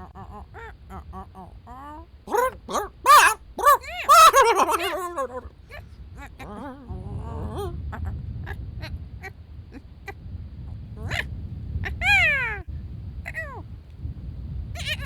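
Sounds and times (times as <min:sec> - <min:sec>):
meow-like animal calls: 0:00.0 - 0:08.6, 0:11.0 - 0:12.7, 0:13.3 - 0:13.6, 0:14.8 - 0:15.0
low steady rumble: 0:00.0 - 0:15.0.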